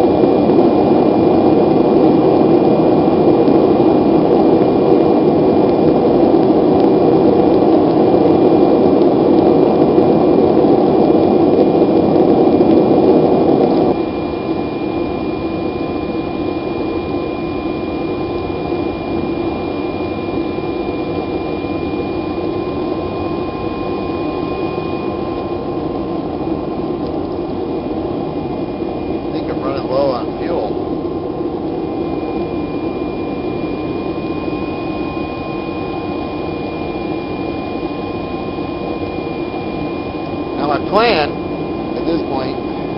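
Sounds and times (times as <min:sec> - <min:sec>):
propane burner roaring: 0:00.0 - 0:42.9
faint steady whistle: 0:14.0 - 0:25.8, 0:31.9 - 0:42.9.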